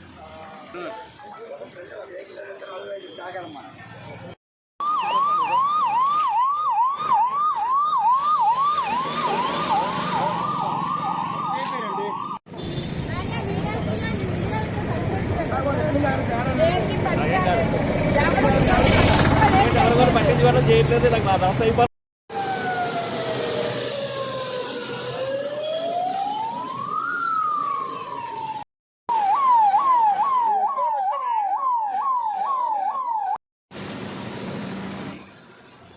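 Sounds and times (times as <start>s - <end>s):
traffic noise: 0.0s - 28.6s, 29.2s - 35.9s
ambulance siren yelping: 4.8s - 12.4s, 22.3s - 33.4s
second siren: 4.8s - 12.4s, 22.3s - 33.4s.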